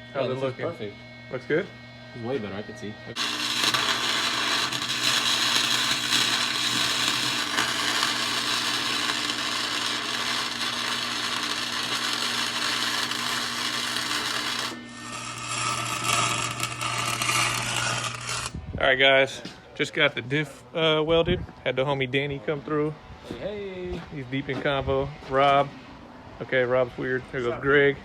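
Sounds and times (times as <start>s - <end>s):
low electrical hum: 0.0s - 28.0s
welding arc crackling and hissing: 3.2s - 18.6s.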